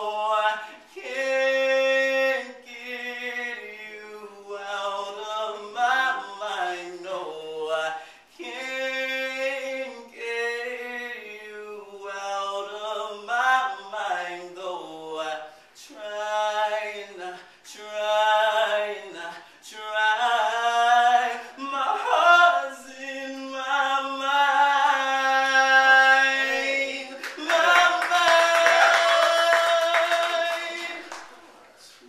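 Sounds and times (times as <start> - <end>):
person singing unaccompanied: 0.0 - 31.1
singer breathing: 7.9 - 8.4.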